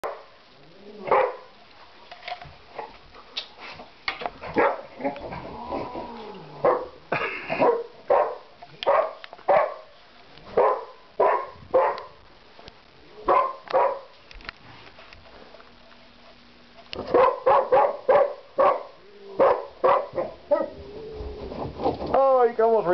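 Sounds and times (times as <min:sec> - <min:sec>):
dog barking: 0:00.0 - 0:00.3, 0:01.1 - 0:01.5, 0:04.6 - 0:04.9, 0:06.6 - 0:07.0, 0:07.6 - 0:09.9, 0:10.6 - 0:12.2, 0:13.3 - 0:14.1, 0:17.0 - 0:20.8.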